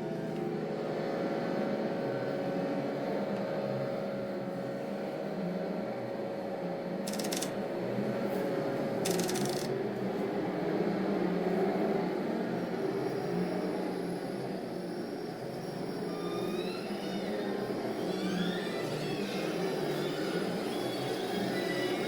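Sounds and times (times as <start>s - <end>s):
typewriter keys clattering: 7.1s - 7.5s, 9.1s - 9.7s.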